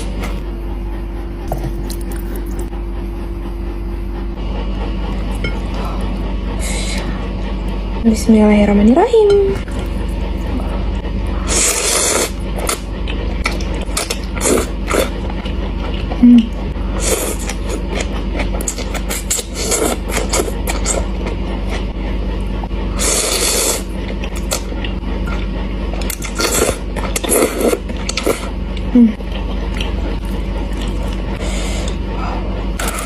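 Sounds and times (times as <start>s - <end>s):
steady low hum: 0.0s - 33.0s
noodles slurping: 9.6s - 16.2s, 16.9s - 21.8s, 23.0s - 32.0s
chewing and mouth clicks: 24.2s - 32.0s.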